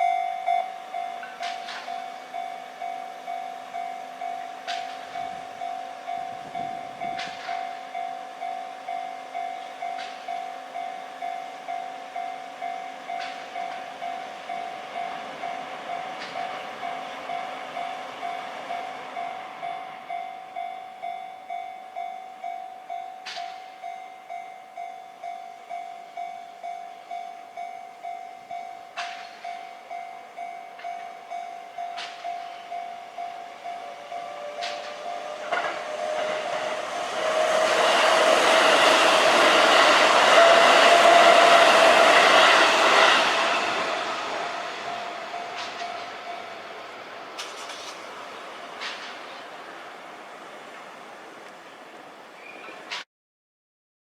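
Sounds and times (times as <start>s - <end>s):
level-crossing alarm bell ringing: 0.0s - 47.9s
electric train passing: 0.0s - 53.0s.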